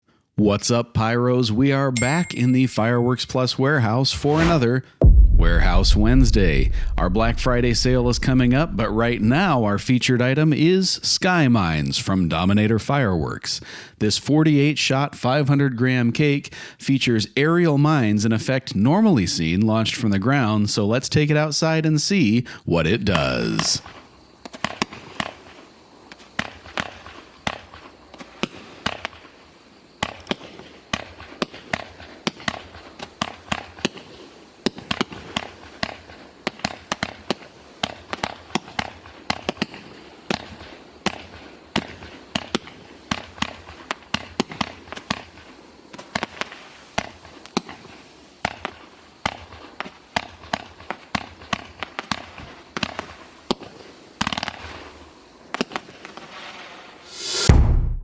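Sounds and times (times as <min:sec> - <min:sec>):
firework cake shots and bangs: 0:04.2 - 0:09.6, 0:57.1 - 0:58.0.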